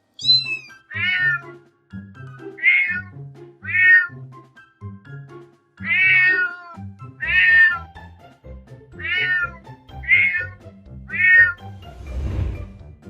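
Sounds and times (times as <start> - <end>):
background music: 0.0 - 13.0
cat meowing: 0.2 - 1.5, 2.6 - 4.1, 5.8 - 7.9, 9.0 - 11.7.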